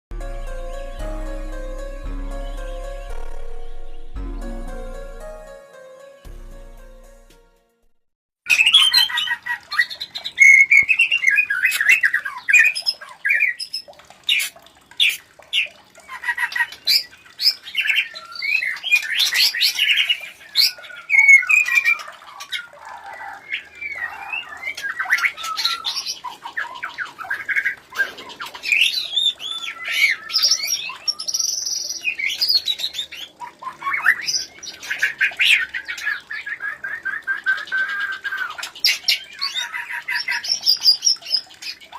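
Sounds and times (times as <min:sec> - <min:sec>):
birds calling with trills: 0:08.5 - 0:41.9.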